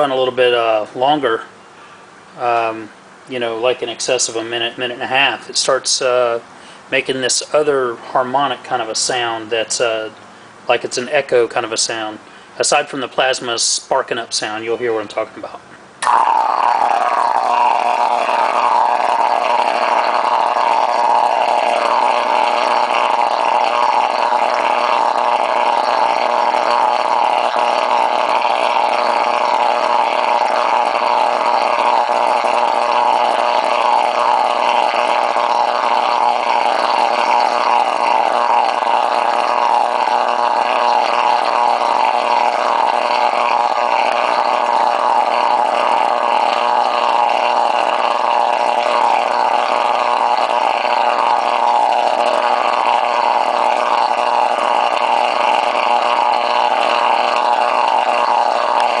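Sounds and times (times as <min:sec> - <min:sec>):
underwater plasma sparking: 0:16.0 - 0:59.0.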